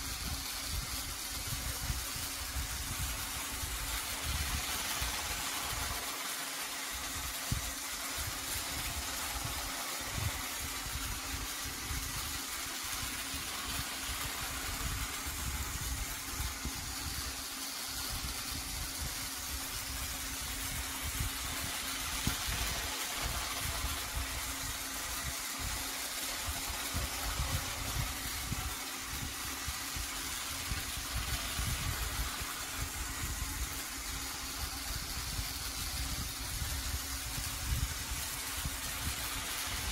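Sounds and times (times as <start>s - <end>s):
toy train motor humming: 0.0s - 39.9s.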